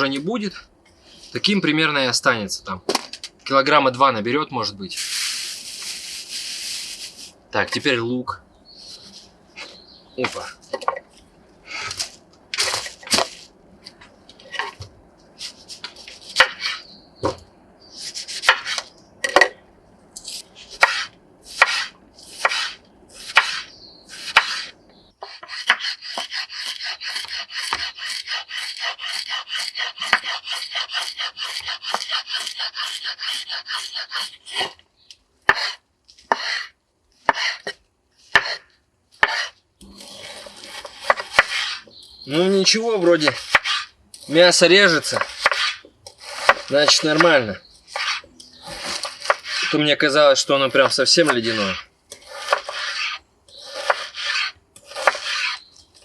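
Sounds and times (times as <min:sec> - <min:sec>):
knife chopping on cutting board: 0:20.8 - 0:34.7, 0:35.5 - 0:36.7, 0:37.3 - 0:39.5, 0:40.6 - 0:41.8, 0:43.2 - 0:43.9, 0:45.1 - 0:47.3, 0:47.9 - 0:49.6, 0:52.2 - 0:53.0, 0:53.6 - 0:55.6.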